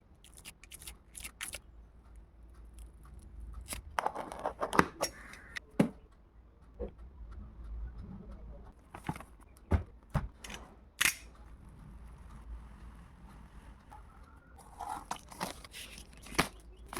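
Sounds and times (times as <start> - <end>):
packaging clicks and knocks: 8.9 - 11.2, 14.6 - 16.9
packaging tearing and rustling: 14.6 - 16.9.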